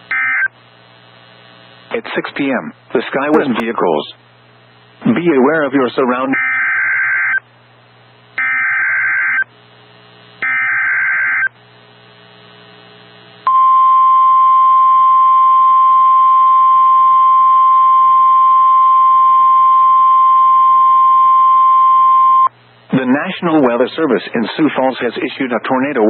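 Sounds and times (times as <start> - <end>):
steady warning alarm tone: 6.3 - 7.4, 8.4 - 9.4, 10.4 - 11.5, 13.5 - 22.5
harsh digital data bursts: 10.4 - 11.5.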